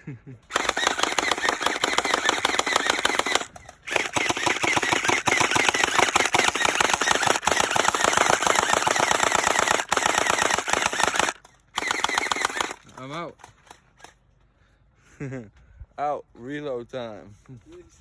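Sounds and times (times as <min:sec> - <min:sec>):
gel blaster firing: 0:00.5 - 0:12.8.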